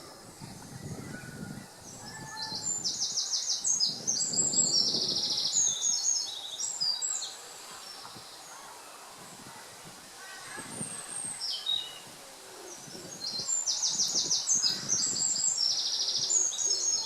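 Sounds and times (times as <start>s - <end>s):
songbird singing trills: 0.0s - 7.4s, 12.7s - 17.0s.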